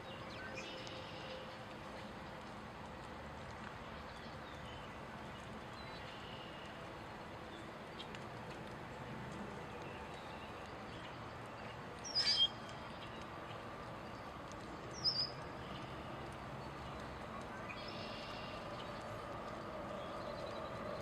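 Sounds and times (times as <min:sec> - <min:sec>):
outdoor background hiss: 0:00.0 - 0:21.0.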